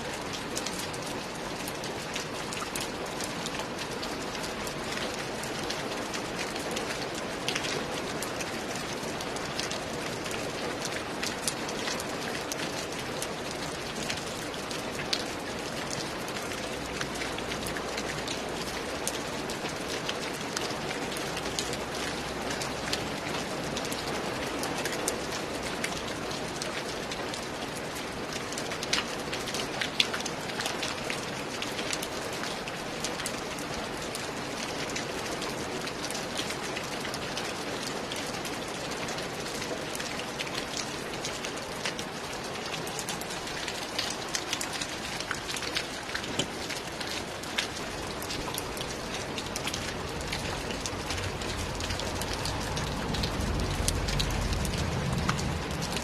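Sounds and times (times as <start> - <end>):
steady rain falling: 0.0 - 56.0
low rumble: 50.8 - 56.0.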